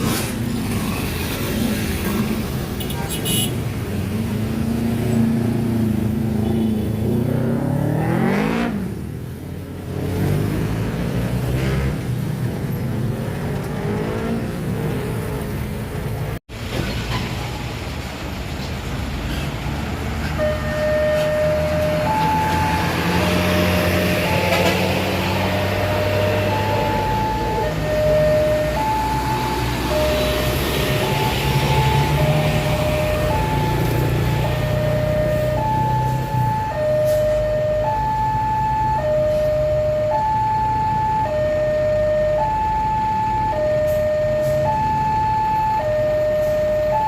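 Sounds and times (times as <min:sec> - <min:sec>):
vehicle engines passing: 0:00.0 - 0:47.0
two-note warning tone: 0:20.4 - 0:24.7.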